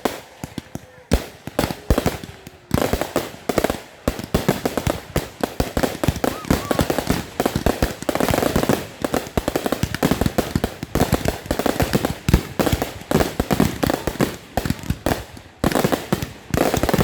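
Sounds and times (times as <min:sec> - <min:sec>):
fireworks bangs: 0:00.0 - 0:17.0.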